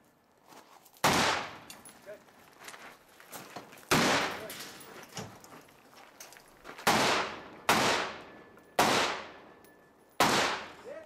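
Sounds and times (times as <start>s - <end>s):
rifle shots echoing: 1.0s - 1.7s, 3.9s - 4.7s, 6.8s - 9.6s, 10.2s - 10.9s.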